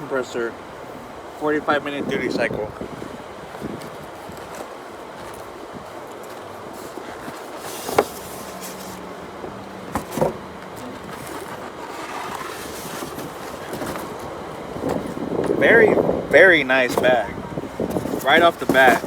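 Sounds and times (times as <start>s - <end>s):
outdoor background noise: 0.0s - 19.0s
packaging handling noises: 6.2s - 15.4s.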